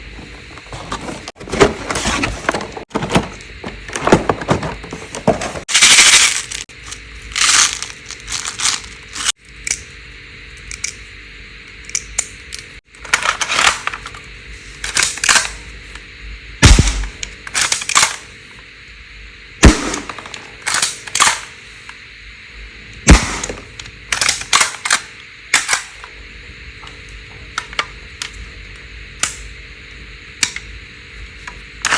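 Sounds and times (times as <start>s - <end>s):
toy gun firing: 16.6s - 18.2s, 23.1s - 25.9s.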